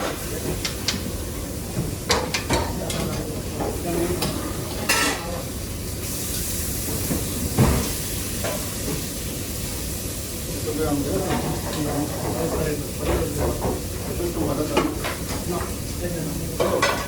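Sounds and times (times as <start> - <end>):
pans and utensils clattering: 0.0 - 1.1, 1.7 - 5.4, 11.0 - 15.8, 16.4 - 17.0
sizzling hiss: 3.8 - 17.0.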